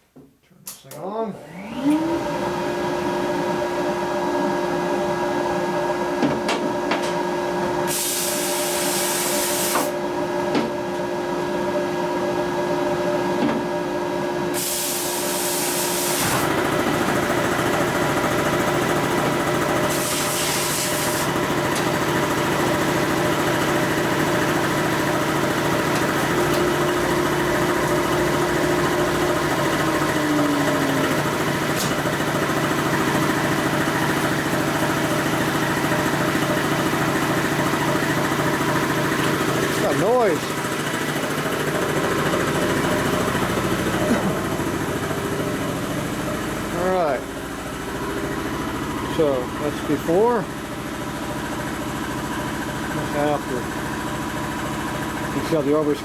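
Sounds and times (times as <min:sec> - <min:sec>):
blast cabinet motor hum: 0:01.4 - 0:56.0
blast gun hissing air: 0:07.9 - 0:09.9.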